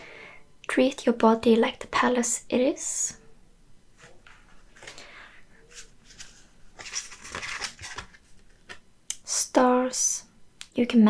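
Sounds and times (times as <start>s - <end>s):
cards sliding and rustling: 4.0s - 8.8s.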